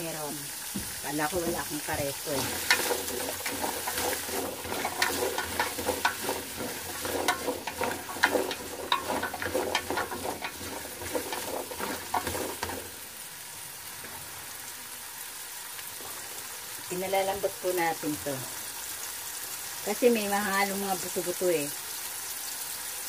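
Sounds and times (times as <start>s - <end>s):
food sizzling in hot oil: 0.0s - 23.0s
utensil scraping and clinking pan: 1.2s - 13.0s.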